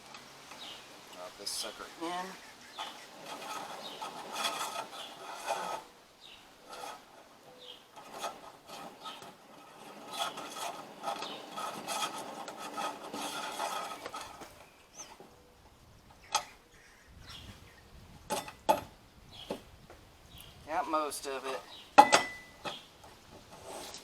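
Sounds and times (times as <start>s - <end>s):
metal parts rubbing and scraping: 0.6s - 15.2s, 21.2s - 24.0s.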